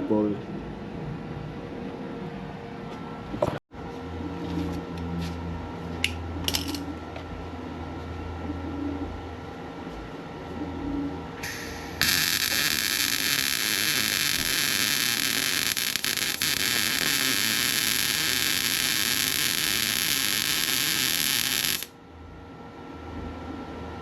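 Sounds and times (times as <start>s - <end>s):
welder crackling hiss: 11.4s - 21.9s.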